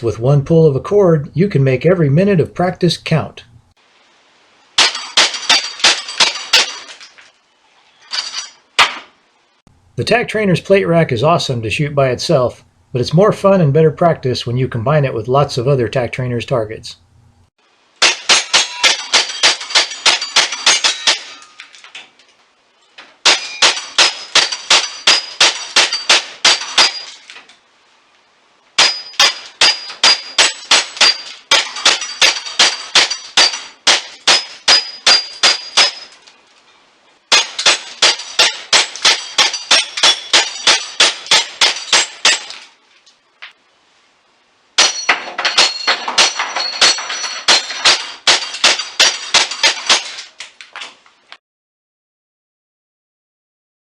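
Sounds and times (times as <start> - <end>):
shots clanging on steel plates: 4.8 - 7.2, 8.1 - 9.1, 18.0 - 21.9, 23.2 - 27.4, 28.8 - 36.3, 37.3 - 42.7, 44.8 - 50.4.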